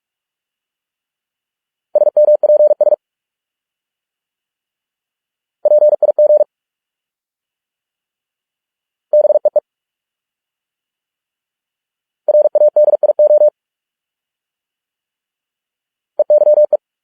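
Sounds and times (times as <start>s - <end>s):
morse code beeps: 5.7s - 6.4s, 12.3s - 13.5s, 16.2s - 16.8s.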